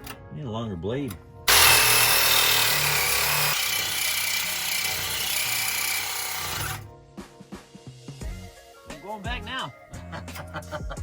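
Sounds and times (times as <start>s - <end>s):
reciprocating saw cutting metal pipe: 1.5s - 6.9s.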